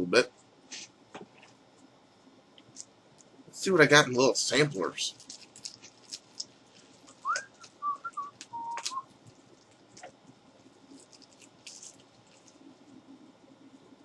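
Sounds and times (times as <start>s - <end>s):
sample packets crinkling: 4.4s - 13.1s
person whistling: 7.2s - 9.0s.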